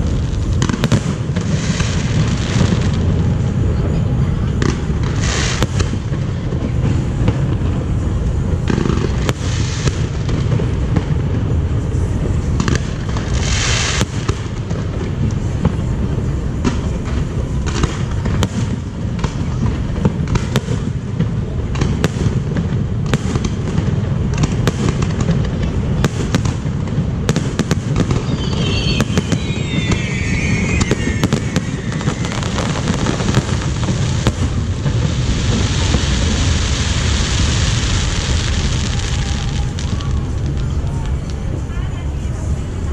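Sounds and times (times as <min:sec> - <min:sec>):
firework cracks and pops: 0:00.0 - 0:41.6
firework shell bursts rumbling: 0:00.0 - 0:41.6
falling firework whistle: 0:27.3 - 0:41.4.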